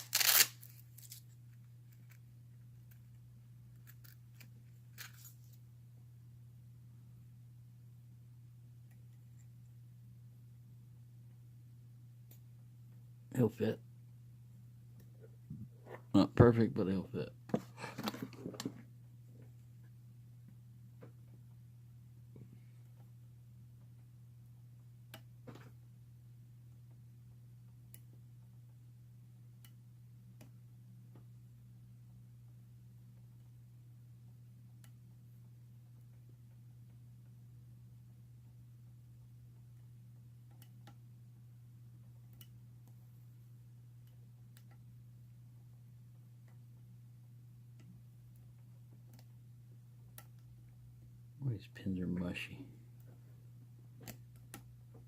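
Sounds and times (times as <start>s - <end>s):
low electrical hum: 0.0s - 55.0s
faint metallic clicks and scrapes: 2.8s - 5.6s.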